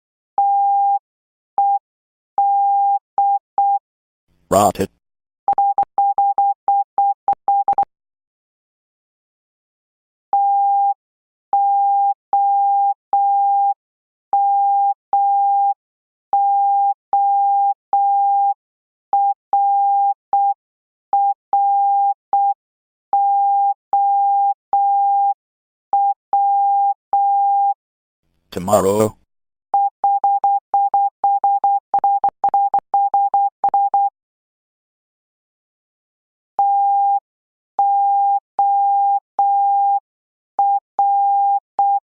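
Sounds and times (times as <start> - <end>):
morse code beeps: 29.8 - 34.1, 36.6 - 37.2, 37.8 - 40.0, 40.6 - 42.0.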